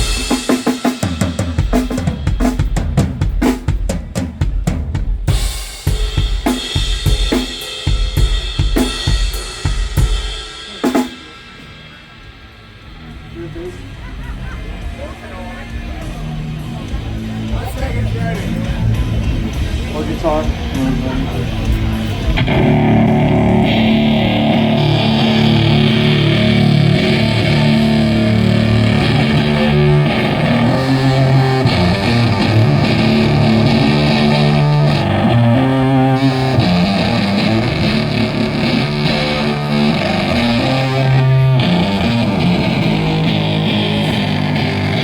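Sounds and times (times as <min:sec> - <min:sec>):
distorted electric guitar riff: 0:00.0 - 0:03.5, 0:15.7 - 0:45.0.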